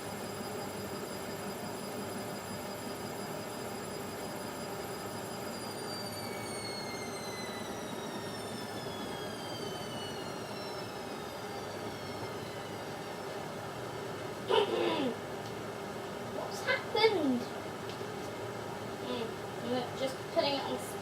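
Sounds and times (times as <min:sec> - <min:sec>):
motor high whine: 0:00.0 - 0:15.2
washing machine spinning: 0:00.0 - 0:21.0.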